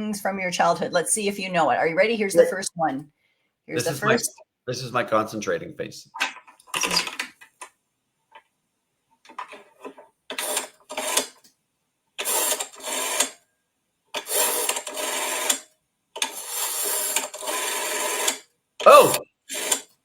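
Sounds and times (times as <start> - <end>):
rotary telephone dial turning: 10.3 - 11.4, 12.2 - 13.4, 14.2 - 18.4, 19.5 - 19.9.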